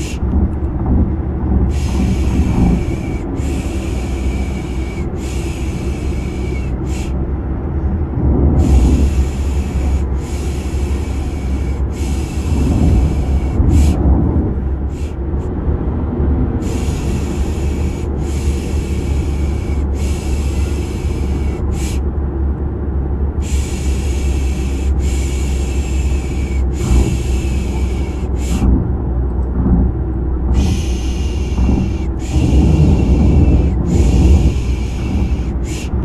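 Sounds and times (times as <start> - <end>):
low car rumble: 0.0 - 36.0
person shushing: 30.5 - 36.0.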